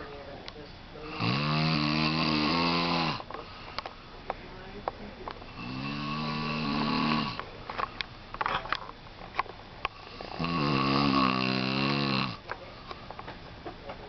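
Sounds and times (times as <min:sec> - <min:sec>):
man snoring: 0:01.0 - 0:03.3, 0:05.5 - 0:07.4, 0:10.0 - 0:12.4.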